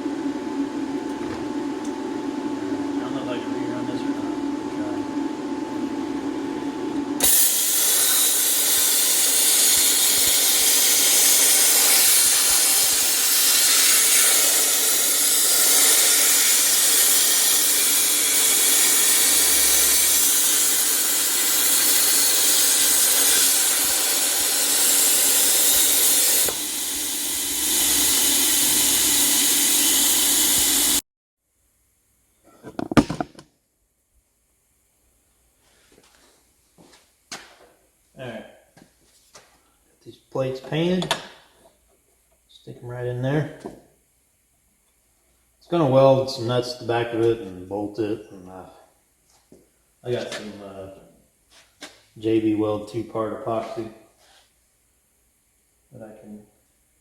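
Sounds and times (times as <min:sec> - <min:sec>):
pressurized gas hissing: 0:07.2 - 0:31.0.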